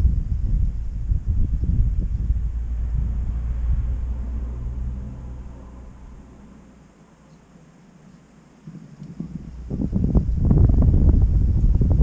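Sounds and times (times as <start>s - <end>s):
wind buffeting microphone: 0.0s - 6.3s, 9.0s - 12.0s.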